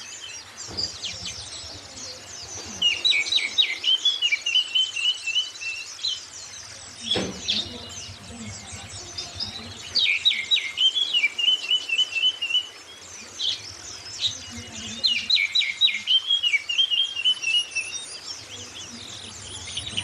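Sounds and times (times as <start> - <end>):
bird singing whistles and trills: 0.0 - 20.0
high-pitched bird twittering: 7.0 - 12.8.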